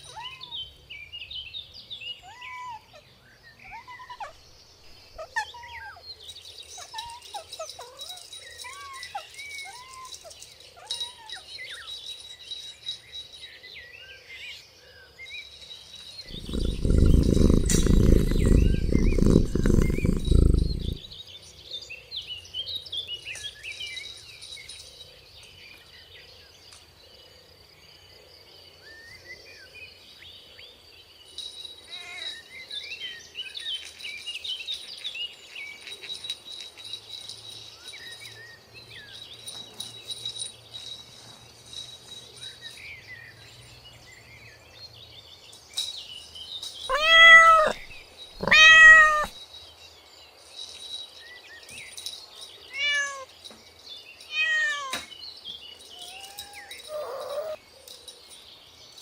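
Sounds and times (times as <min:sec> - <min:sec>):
cricket trill: 0:16.1 - 0:21.2
cat meowing: 0:46.9 - 0:49.3, 0:52.8 - 0:53.2, 0:54.4 - 0:54.9, 0:56.1 - 0:57.6.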